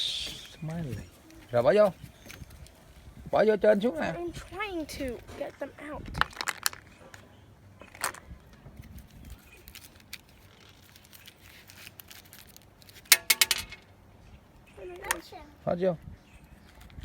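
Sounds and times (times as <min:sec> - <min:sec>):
candies clicking and rattling: 0:06.2 - 0:06.9.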